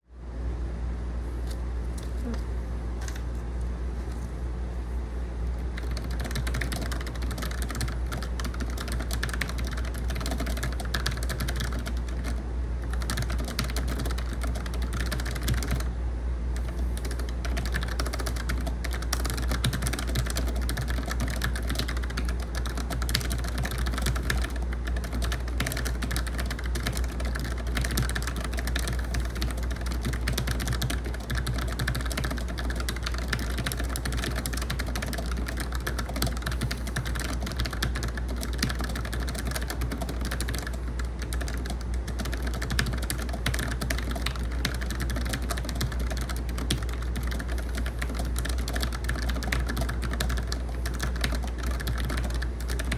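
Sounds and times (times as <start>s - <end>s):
air conditioner hum: 0.0s - 52.9s
fast keyboard typing: 5.7s - 15.9s, 16.6s - 52.9s.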